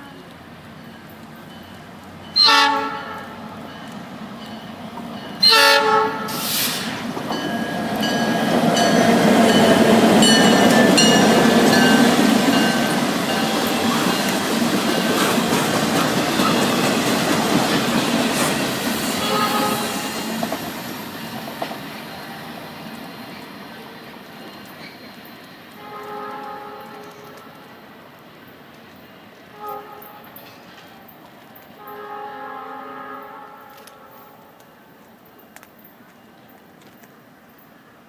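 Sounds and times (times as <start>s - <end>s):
train wheels rumbling and clacking: 0.2s - 32.0s
train air horn blasts: 2.4s - 3.6s, 5.4s - 7.0s, 19.1s - 20.3s, 25.8s - 27.6s, 29.5s - 30.4s, 31.8s - 34.5s.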